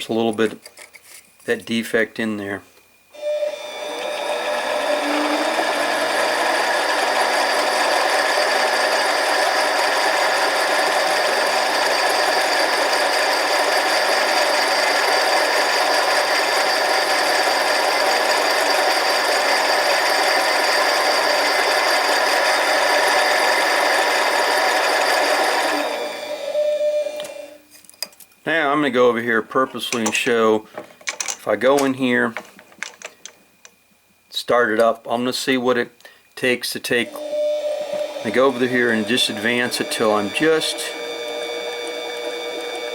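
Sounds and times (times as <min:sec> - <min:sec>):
lathe motor whine: 0:03.1 - 0:27.6, 0:36.9 - 0:42.9.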